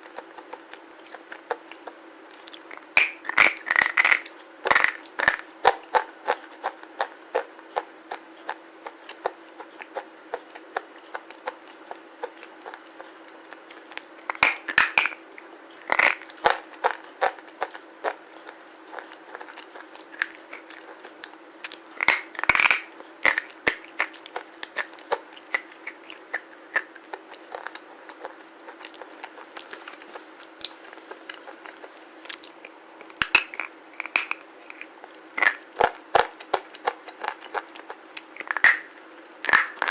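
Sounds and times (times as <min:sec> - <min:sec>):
faint steady hum: 0:00.0 - 0:39.9.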